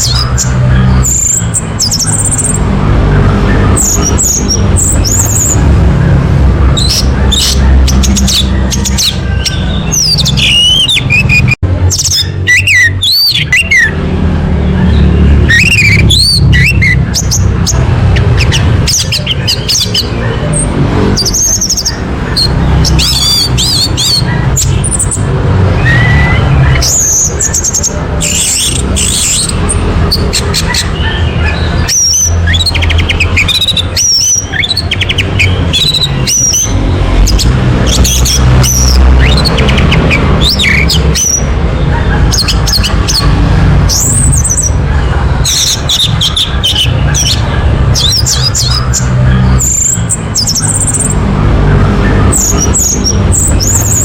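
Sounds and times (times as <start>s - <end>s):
thrush singing whistled phrases: 6.8s - 14.0s.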